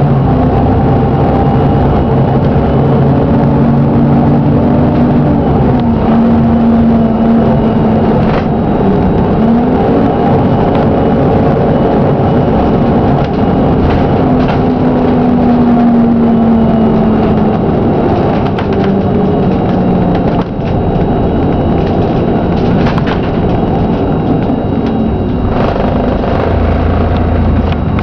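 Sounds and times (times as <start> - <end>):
bus engine whining: 0.0 - 28.0
engine knocking: 12.8 - 28.0.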